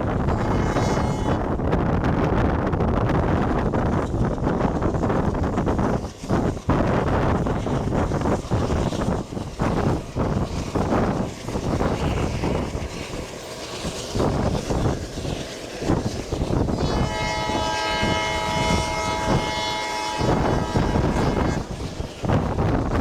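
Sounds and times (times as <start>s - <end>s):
diesel locomotive engine chugging: 0.0s - 23.0s
locomotive horn blast: 0.3s - 1.5s, 16.7s - 22.4s.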